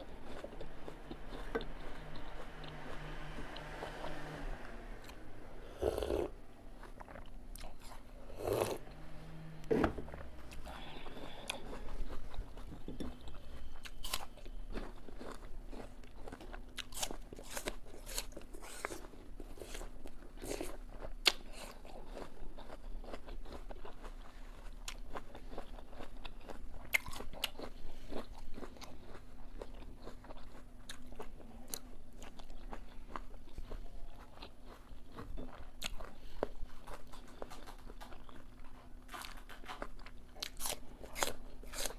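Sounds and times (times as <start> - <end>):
person chewing crisp apple: 0.0 - 4.2, 5.0 - 9.0, 10.0 - 41.9
faint hum: 0.0 - 41.9.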